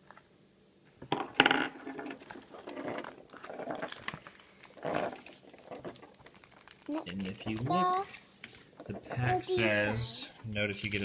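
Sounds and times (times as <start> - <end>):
plastic toys clattering: 1.1 - 8.2, 10.7 - 11.0.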